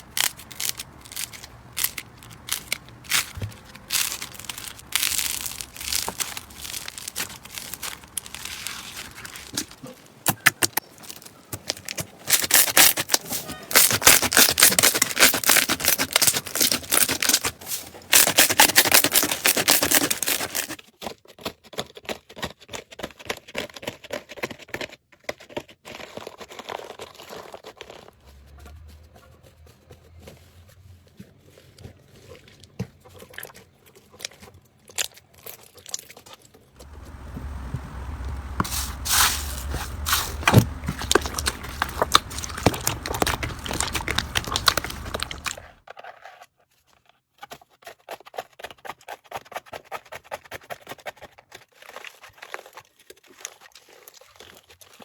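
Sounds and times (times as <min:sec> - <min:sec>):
slime crackling and popping: 0:00.0 - 0:17.5, 0:38.2 - 0:45.8
low hum: 0:36.8 - 0:45.7.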